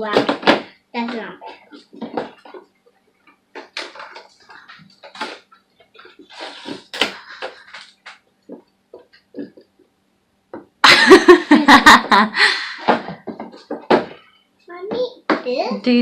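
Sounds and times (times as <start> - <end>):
packaging rustling and tapping: 3.3 - 9.2.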